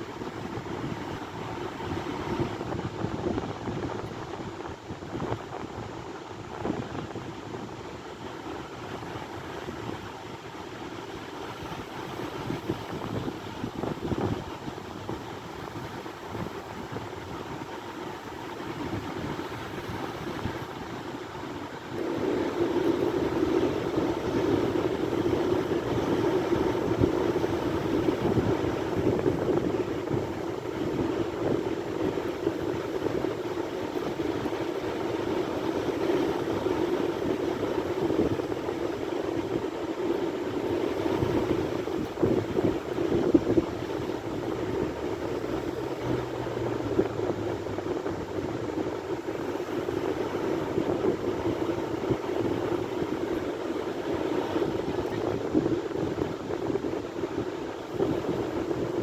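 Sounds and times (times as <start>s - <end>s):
sea waves breaking: 0.0s - 59.0s
wind on microphone: 0.0s - 59.0s.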